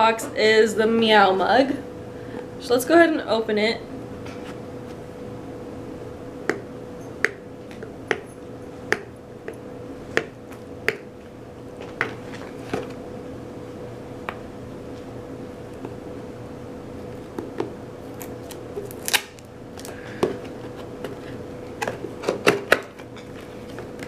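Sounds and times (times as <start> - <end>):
faint hum: 0.0 - 24.0.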